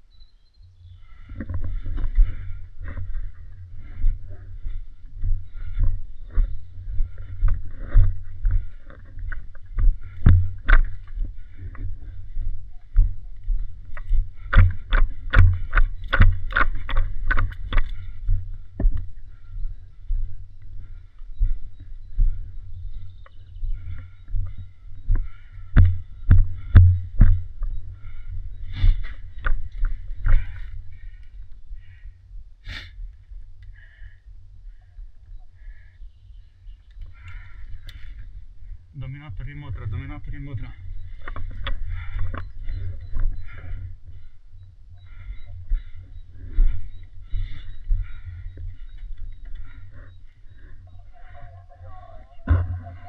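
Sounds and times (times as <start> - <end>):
wind rumble on camera: 0.6 - 53.0
footsteps and gear knocking: 1.3 - 31.6, 39.8 - 43.9, 45.0 - 50.8.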